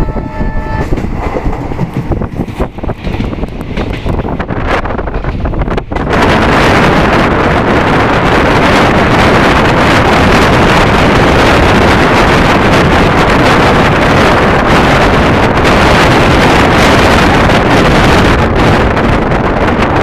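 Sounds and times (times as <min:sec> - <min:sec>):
train running noise: 0:00.0 - 0:20.0
wind buffeting microphone: 0:00.0 - 0:20.0.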